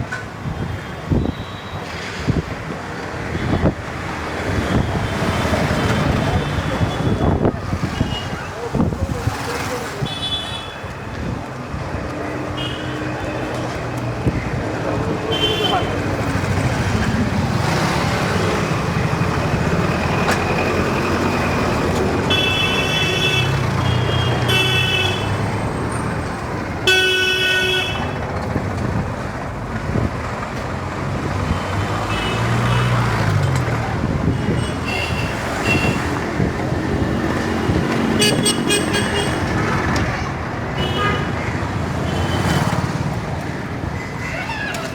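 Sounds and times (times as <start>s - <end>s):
traffic engine and tyre noise: 0.0s - 44.9s
vehicle horns honking: 10.0s - 10.9s, 12.5s - 13.5s, 15.3s - 16.1s, 22.2s - 25.7s, 26.8s - 28.2s, 34.3s - 36.1s, 38.1s - 39.5s, 40.7s - 41.4s.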